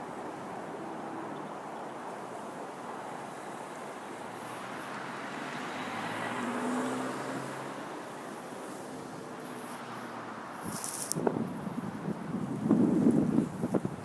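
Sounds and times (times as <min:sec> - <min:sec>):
strong wind blowing: 0:10.5 - 0:14.0.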